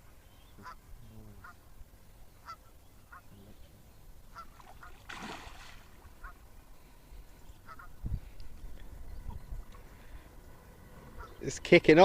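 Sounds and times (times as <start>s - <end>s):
geese honking: 0.6s - 1.7s, 2.4s - 3.3s, 4.3s - 5.0s, 6.1s - 6.5s, 7.6s - 8.0s, 11.0s - 11.5s.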